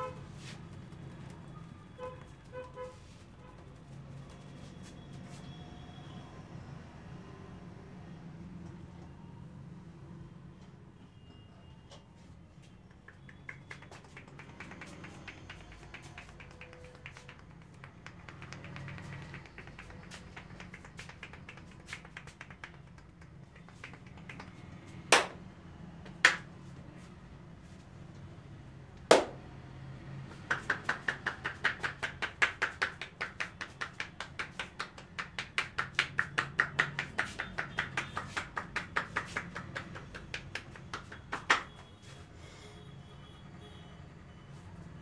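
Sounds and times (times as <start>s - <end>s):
rapid rhythmic tapping on a head: 0.0s - 4.6s, 12.6s - 25.4s, 26.0s - 26.5s, 29.1s - 29.4s, 30.3s - 42.2s
sharp slaps on a head: 13.0s - 25.4s, 26.0s - 26.5s, 29.1s - 29.5s, 30.3s - 41.9s.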